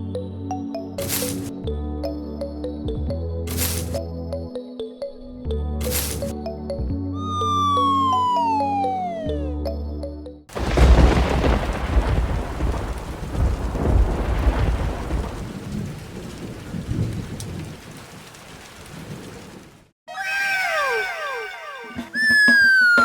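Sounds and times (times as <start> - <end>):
heavy rain: 1.0 - 1.5, 3.5 - 4.0, 10.5 - 19.9
rolling thunder: 10.5 - 19.7
thunderclap: 10.5 - 19.8.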